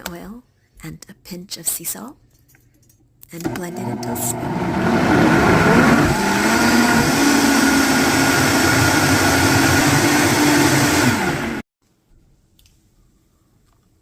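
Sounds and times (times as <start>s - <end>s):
blender motor whining: 3.4s - 11.6s.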